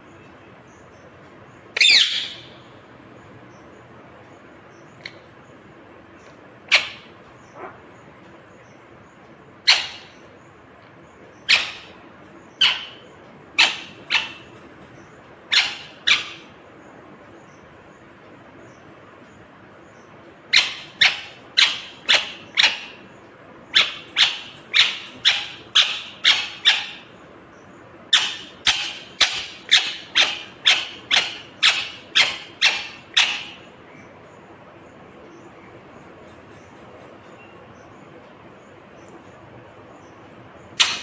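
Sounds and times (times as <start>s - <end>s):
parakeet squawking: 1.8s - 2.6s, 6.7s - 7.9s, 9.7s - 10.3s, 11.4s - 16.5s, 20.5s - 23.1s, 23.7s - 27.1s, 28.1s - 33.7s, 40.8s - 41.0s.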